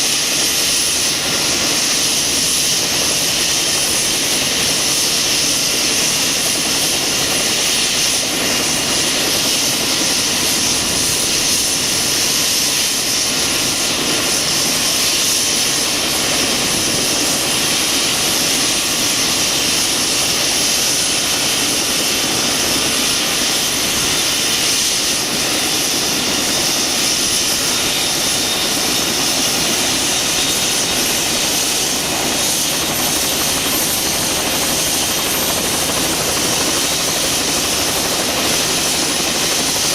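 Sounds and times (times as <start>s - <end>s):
helicopter turbine whine and rotor: 0.0s - 39.9s.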